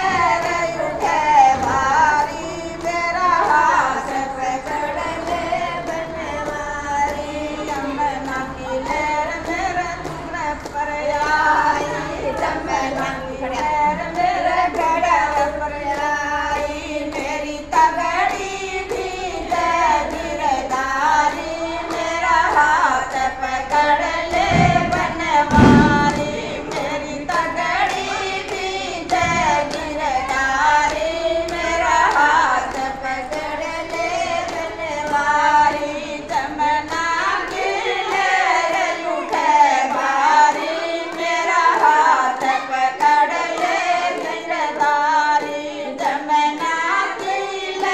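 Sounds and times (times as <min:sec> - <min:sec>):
person singing devotional song: 0:00.0 - 0:47.9
low thumps: 0:24.0 - 0:27.8.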